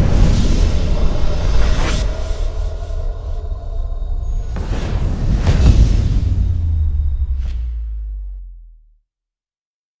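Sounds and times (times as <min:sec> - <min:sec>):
low rumbling boom: 0:02.2 - 0:09.0.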